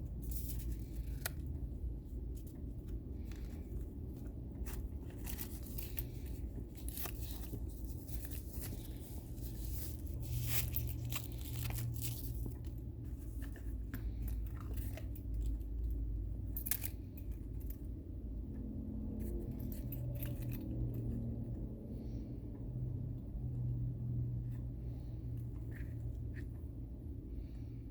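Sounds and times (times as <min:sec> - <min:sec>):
steady low hum: 0:00.0 - 0:27.9
paper rustling and tearing: 0:00.2 - 0:01.6, 0:03.2 - 0:14.2.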